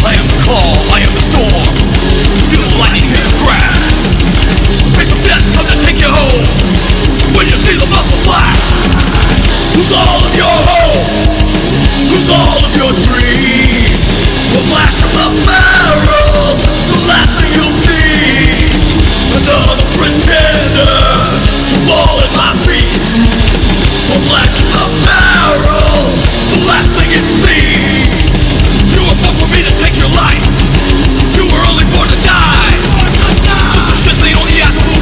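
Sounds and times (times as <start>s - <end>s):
heavy punk-metal song: 0.0s - 35.0s
person yelling vocals: 7.3s - 11.3s, 14.6s - 18.8s, 24.1s - 28.2s, 31.2s - 35.0s.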